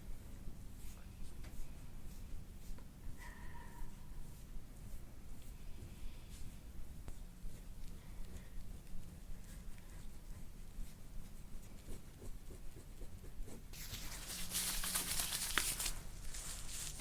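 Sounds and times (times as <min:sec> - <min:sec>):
hands rubbing skin in massage: 0:13.8 - 0:17.0.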